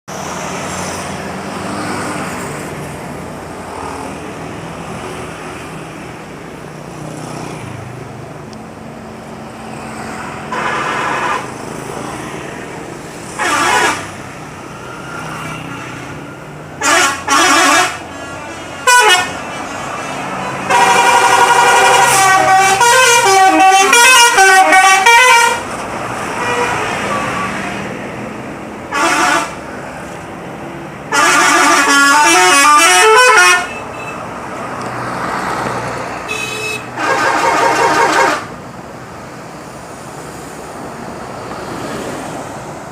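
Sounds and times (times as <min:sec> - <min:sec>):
road traffic and engine noise: 0:00.0 - 0:42.9
melodic bus horn tune: 0:10.4 - 0:11.6, 0:13.4 - 0:14.2, 0:16.8 - 0:25.7, 0:26.3 - 0:27.5, 0:28.9 - 0:29.6, 0:31.1 - 0:34.3, 0:36.2 - 0:38.5
short horn blasts: 0:10.5 - 0:11.5, 0:13.4 - 0:14.1, 0:16.8 - 0:25.6, 0:28.9 - 0:29.6, 0:31.1 - 0:34.2, 0:36.3 - 0:38.5.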